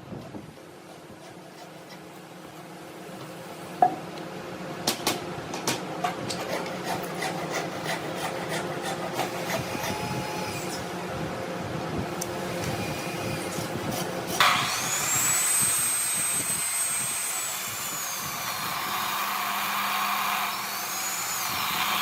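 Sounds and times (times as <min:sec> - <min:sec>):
woodworking machine humming: 0:06.1 - 0:11.1, 0:12.1 - 0:22.0.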